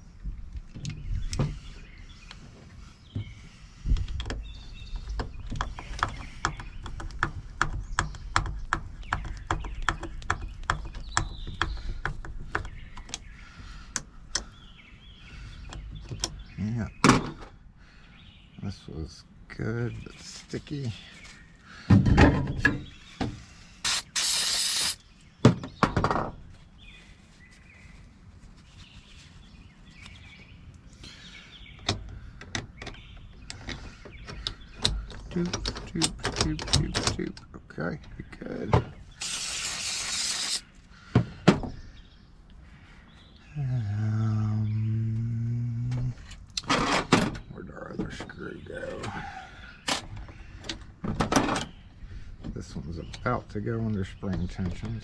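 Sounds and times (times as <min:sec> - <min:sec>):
short hiss: 0:23.8 - 0:25.0, 0:39.2 - 0:40.7.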